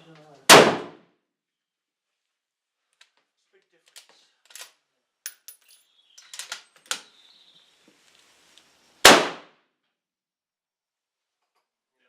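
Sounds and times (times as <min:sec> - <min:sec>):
loud gunshot: 0:00.5 - 0:01.0, 0:09.0 - 0:09.6.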